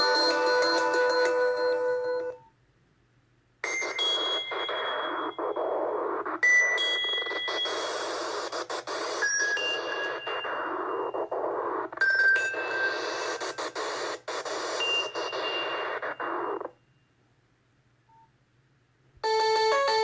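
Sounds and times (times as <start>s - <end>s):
hissing sweeping ringtone: 0.0s - 2.3s
chiming ringtone melody: 0.0s - 2.4s, 19.2s - 20.0s.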